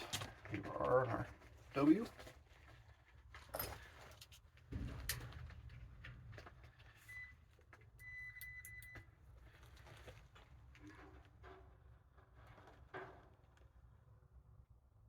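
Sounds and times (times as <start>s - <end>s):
multimeter continuity beeps: 7.1s - 9.1s.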